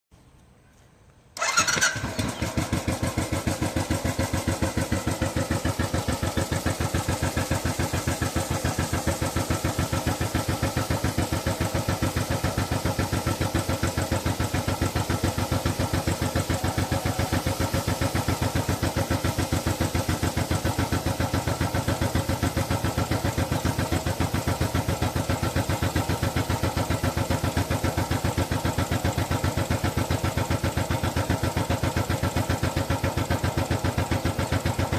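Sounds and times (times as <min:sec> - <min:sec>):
motorcycle engine starting and idling: 0:01.3 - 0:34.9.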